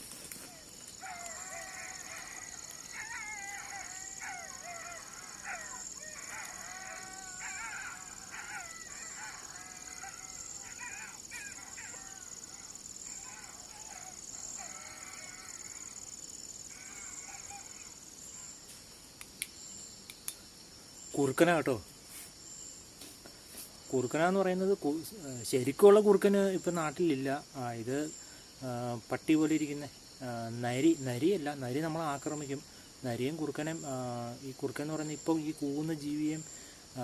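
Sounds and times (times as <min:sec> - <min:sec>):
crickets chirring: 0:00.0 - 0:37.0
jackals howling: 0:00.4 - 0:18.6.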